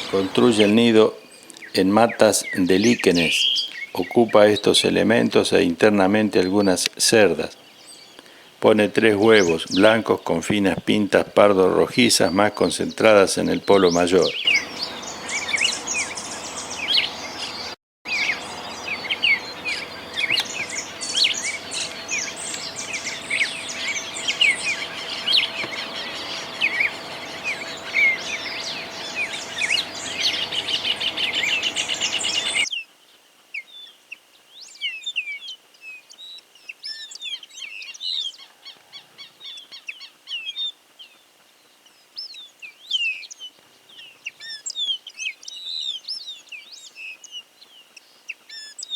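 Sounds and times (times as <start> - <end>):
bird chirps and trills: 0.0 - 11.1, 11.8 - 32.9, 33.5 - 48.9
faint steady hum: 14.5 - 32.7.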